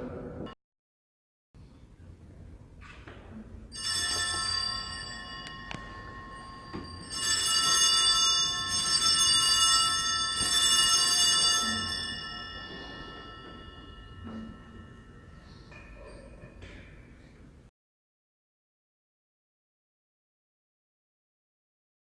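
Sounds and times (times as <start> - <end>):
small bells ringing: 3.7 - 16.8.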